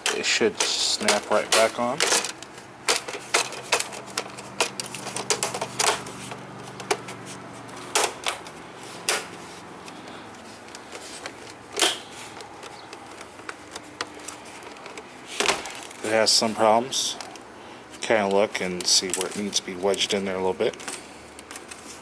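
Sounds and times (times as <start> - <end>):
plastic clips snapping into place: 0.0 - 7.2, 10.7 - 15.8.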